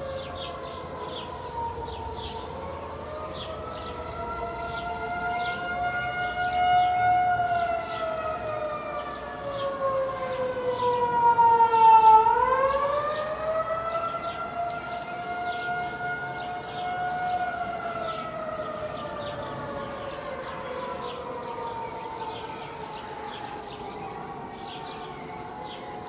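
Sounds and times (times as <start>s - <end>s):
warning sirens wailing: 0.0s - 26.0s.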